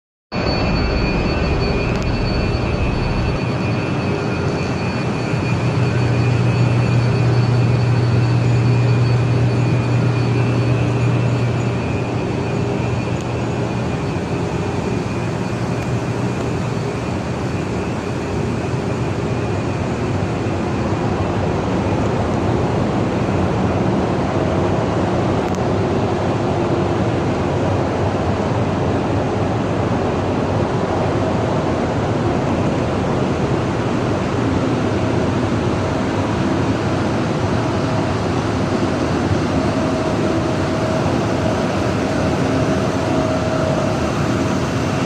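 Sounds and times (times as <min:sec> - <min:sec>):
low hum: 0:00.4 - 0:24.2
faint high whines: 0:00.4 - 0:25.6, 0:31.0 - 0:45.0.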